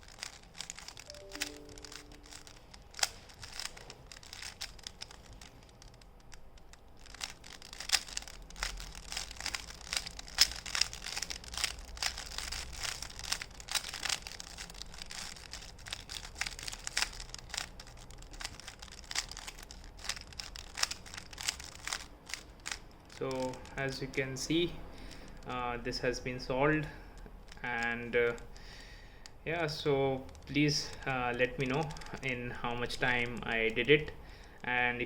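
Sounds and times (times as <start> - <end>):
puzzle cube clicking and rattling: 0.0 - 35.0.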